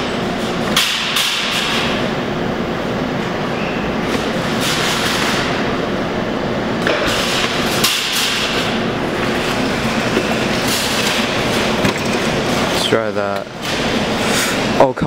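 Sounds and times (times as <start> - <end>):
claw machine knocks and clattering: 10.1 - 12.3.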